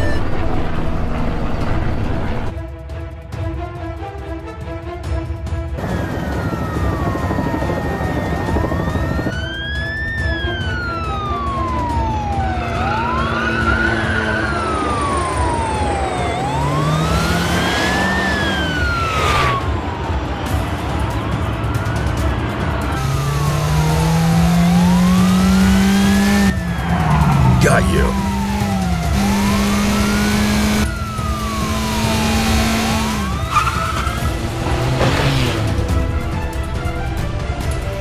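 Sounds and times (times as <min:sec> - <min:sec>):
vehicle engine rumble: 0:00.0 - 0:02.6, 0:05.8 - 0:38.0
police siren wailing: 0:05.8 - 0:36.1.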